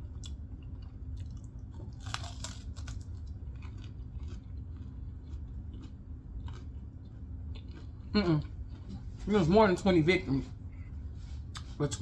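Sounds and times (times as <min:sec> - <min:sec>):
close chewing and biting: 0:00.0 - 0:09.5
low hum: 0:00.0 - 0:12.0.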